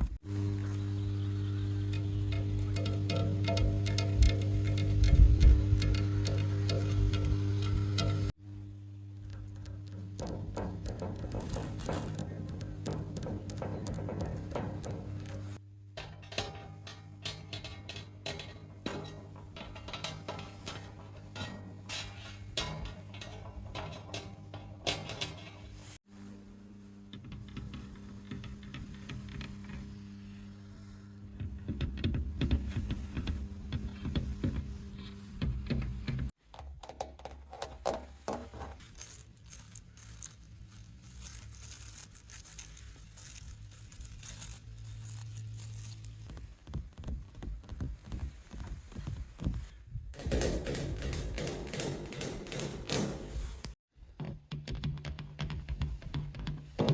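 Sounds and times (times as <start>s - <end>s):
steady low hum: 0.0s - 36.3s
metal objects clinking and scraping: 1.9s - 8.4s, 9.6s - 26.0s, 36.8s - 46.3s
soft rubbing and scraping: 16.9s - 36.4s, 37.5s - 49.8s.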